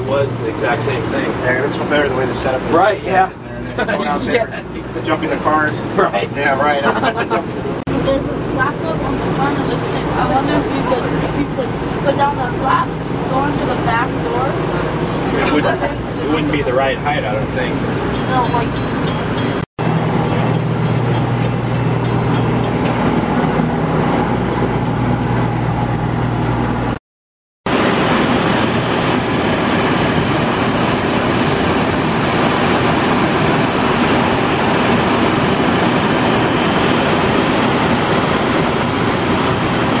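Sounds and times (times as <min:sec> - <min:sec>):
locomotive diesel engine running: 0:00.0 - 0:27.0, 0:27.7 - 0:40.0.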